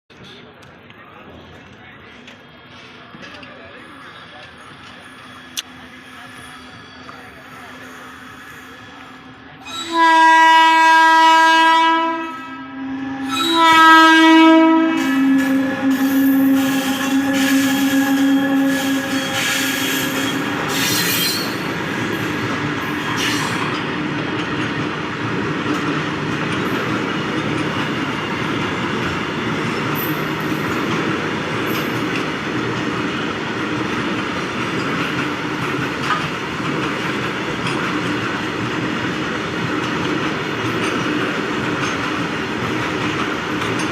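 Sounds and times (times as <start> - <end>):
train wheels rumbling on rails: 0.1 - 43.9
locomotive horn blasts: 9.7 - 21.6.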